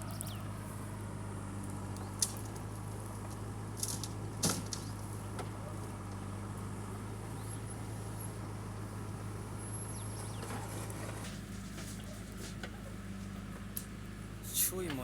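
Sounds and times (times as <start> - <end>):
diesel engine humming: 0.0 - 15.0.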